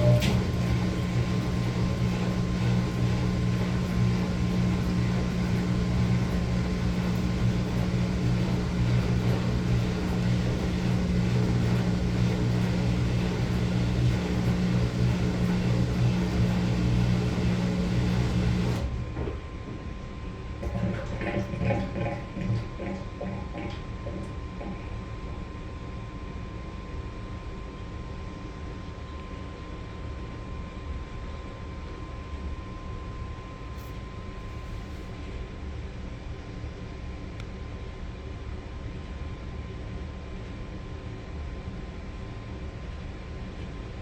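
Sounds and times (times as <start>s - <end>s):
washing machine hum: 0.0s - 27.8s, 31.3s - 36.5s.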